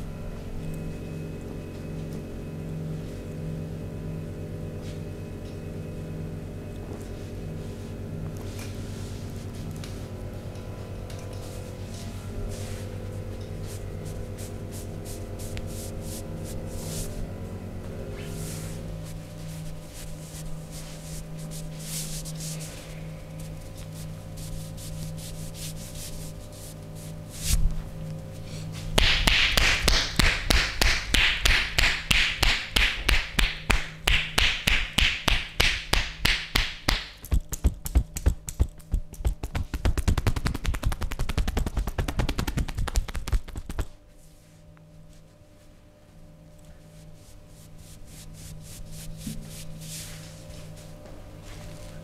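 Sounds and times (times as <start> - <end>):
steady low hum: 0.0 - 52.0
rhythmic hand slaps on body: 28.9 - 44.0.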